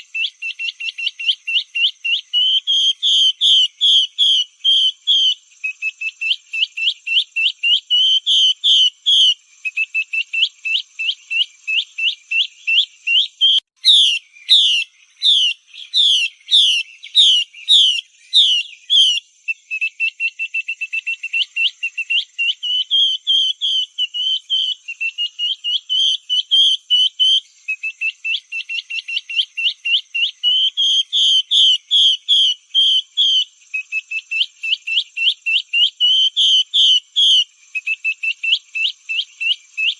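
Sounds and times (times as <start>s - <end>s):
bird whistling rapid notes: 13.1s - 19.2s.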